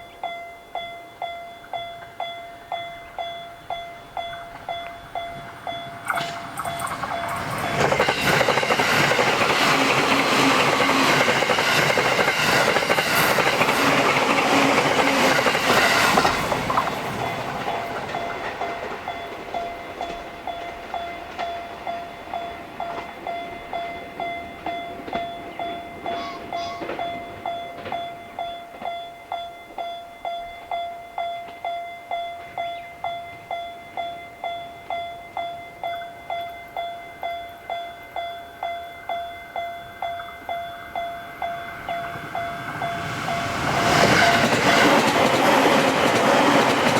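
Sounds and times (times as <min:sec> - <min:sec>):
crossing bell ringing: 0:00.0 - 0:46.9
electric train passing: 0:00.0 - 0:46.9
wheels clacking over rail joints: 0:04.2 - 0:29.0, 0:40.1 - 0:46.9.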